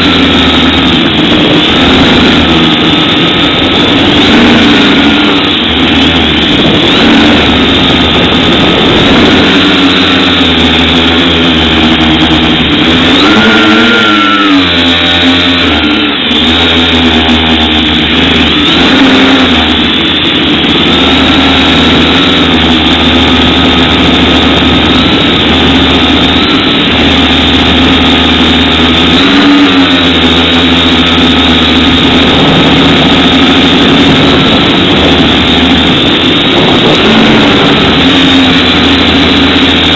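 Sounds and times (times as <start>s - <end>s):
drone motors whining: 0.0s - 39.9s.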